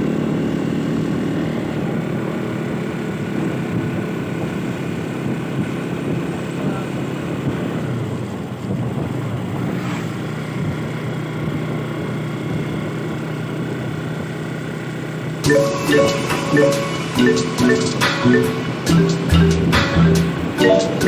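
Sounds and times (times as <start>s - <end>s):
motorcycle engine running: 0.0s - 15.5s.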